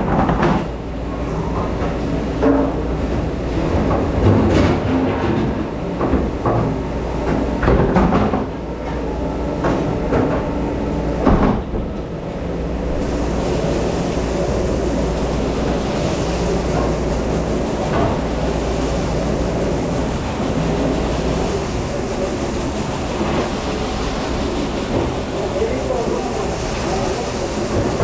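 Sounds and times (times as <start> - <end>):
steady machine rumble: 0.0 - 28.0.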